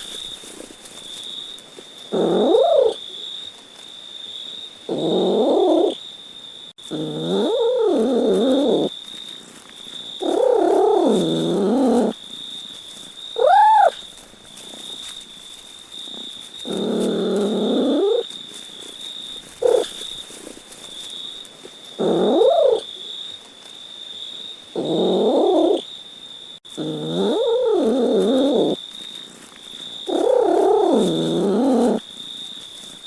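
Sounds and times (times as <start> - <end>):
cat meowing: 2.2 - 3.0, 13.4 - 14.0, 22.1 - 22.8.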